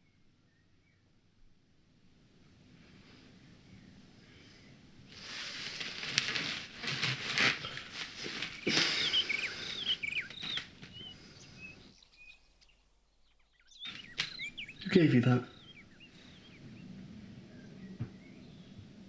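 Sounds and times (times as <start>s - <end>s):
birds chirping: 3.3s - 19.0s
bird wings flapping: 5.2s - 11.8s, 13.9s - 17.1s.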